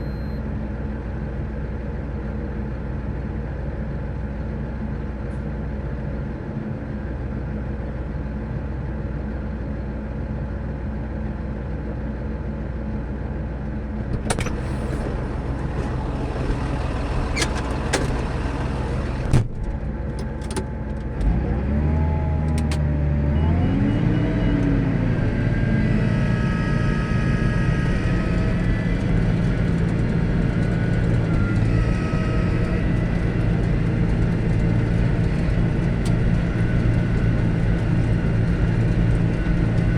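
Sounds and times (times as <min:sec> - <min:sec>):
tractor diesel engine running: 0:00.0 - 0:21.6, 0:24.2 - 0:39.9
sharp click: 0:22.5 - 0:22.8.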